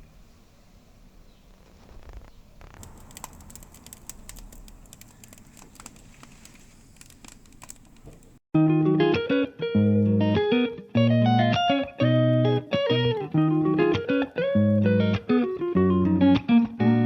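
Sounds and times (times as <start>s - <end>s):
light crackling and clicking: 1.5s - 8.4s
guitar music: 8.6s - 17.0s.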